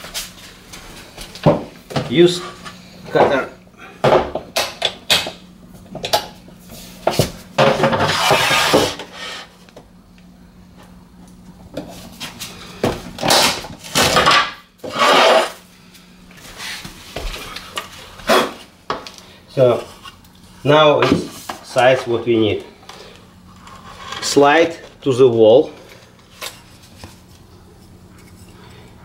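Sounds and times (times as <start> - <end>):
lever cutter crunching floor board: 13.2 - 15.6.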